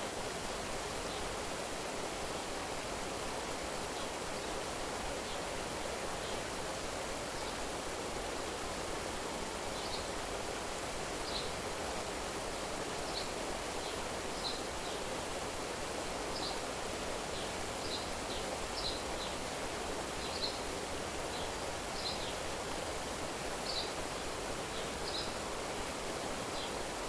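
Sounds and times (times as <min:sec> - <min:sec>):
rushing water ambience: 0:00.0 - 0:27.0.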